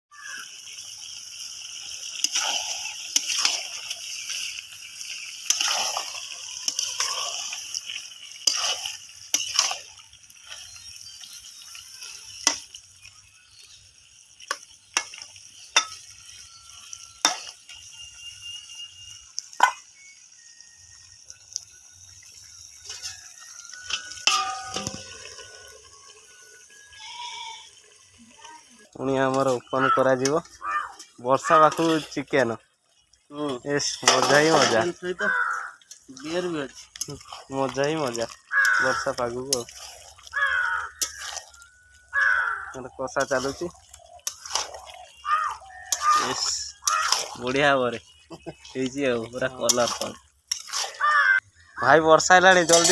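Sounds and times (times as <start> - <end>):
utensils clinking against pot: 0.6 - 20.0, 21.4 - 26.9, 33.7 - 51.4, 52.3 - 52.9
water sloshing and stirring: 1.5 - 13.1, 29.3 - 51.4.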